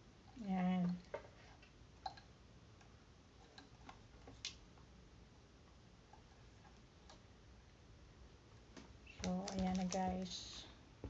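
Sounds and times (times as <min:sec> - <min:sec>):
faint plastic clicks and taps: 0:08.7 - 0:10.5.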